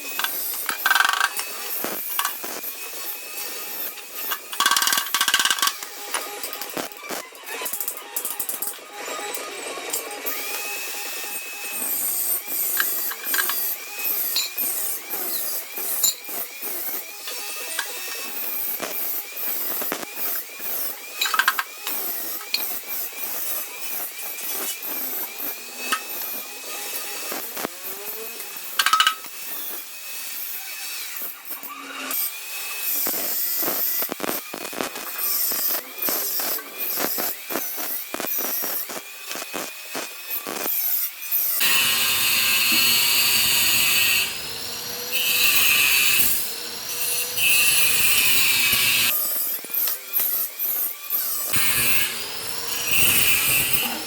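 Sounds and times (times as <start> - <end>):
angle grinder whining: 0.0 - 54.0
grinding hiss on metal: 41.6 - 50.3, 51.5 - 54.0.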